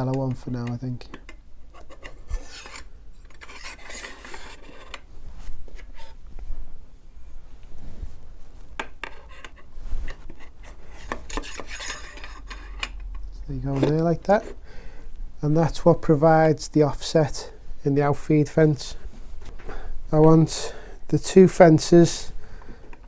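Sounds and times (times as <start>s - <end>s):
rods scraping and rubbing: 1.7s - 6.2s, 9.0s - 12.9s.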